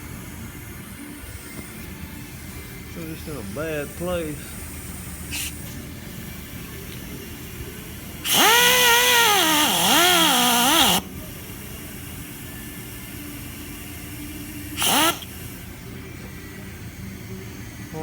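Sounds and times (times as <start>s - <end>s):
power drill motor whine: 7.4s - 15.8s.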